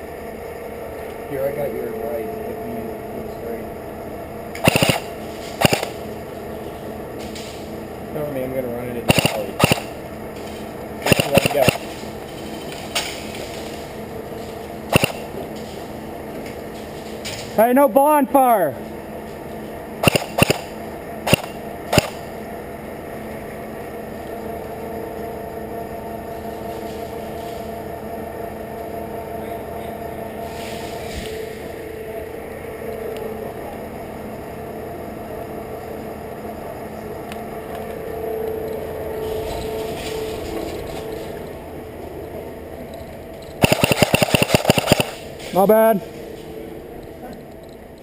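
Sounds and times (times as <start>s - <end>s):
mechanical hum: 0.0s - 48.0s
airsoft gun shots: 4.6s - 6.0s, 9.1s - 10.0s, 11.0s - 11.9s, 14.9s - 15.4s, 20.0s - 22.2s, 43.6s - 45.3s.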